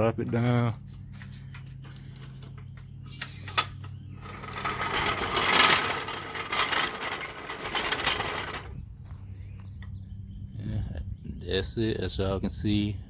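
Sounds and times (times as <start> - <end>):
lift jack clicking and rattling: 3.4 - 8.8.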